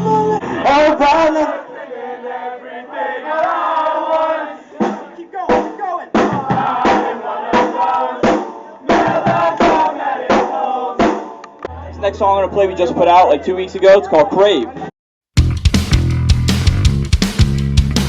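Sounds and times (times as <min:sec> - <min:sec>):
person singing: 0:00.0 - 0:00.7
drum hits: 0:04.8 - 0:11.4, 0:15.4 - 0:18.0
live band music: 0:15.4 - 0:18.0.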